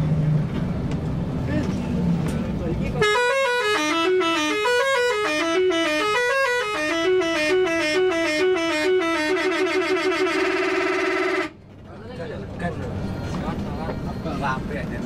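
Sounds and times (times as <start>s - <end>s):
bus musical air horn: 3.0s - 11.6s.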